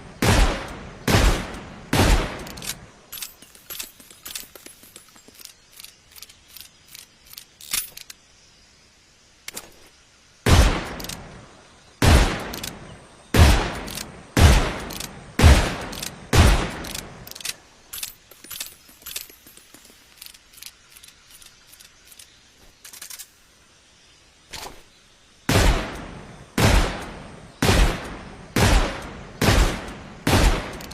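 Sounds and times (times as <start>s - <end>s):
revolver gunshots: 0.2s - 2.8s, 10.4s - 11.3s, 12.0s - 17.2s, 25.5s - 30.9s.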